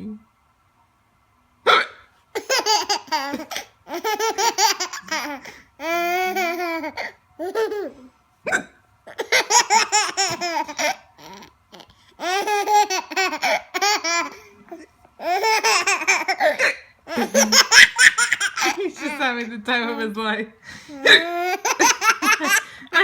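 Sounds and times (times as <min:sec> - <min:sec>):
woman hiccuping: 0:01.7 - 0:02.1, 0:08.5 - 0:08.8
baby laughing: 0:02.4 - 0:08.1, 0:09.1 - 0:19.2, 0:20.9 - 0:23.0.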